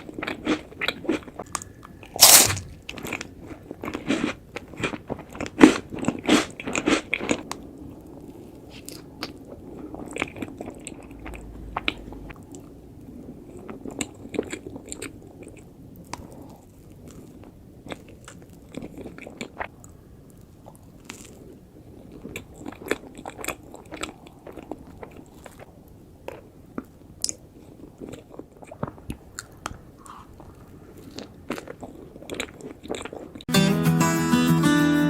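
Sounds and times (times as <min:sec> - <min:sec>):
chewing with mouth clicks: 0:00.0 - 0:12.7, 0:26.3 - 0:33.5.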